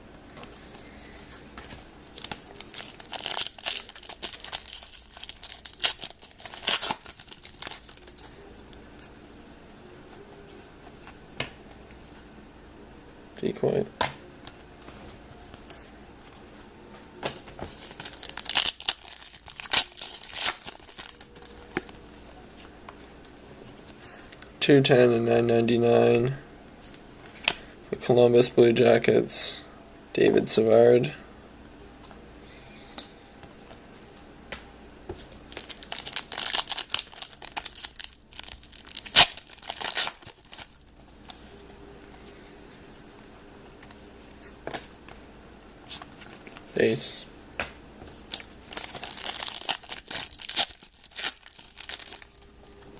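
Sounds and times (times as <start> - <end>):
foil wrapper crinkling and tearing: 2.1 - 8.3, 17.8 - 22.0, 35.4 - 41.4, 48.2 - 52.4.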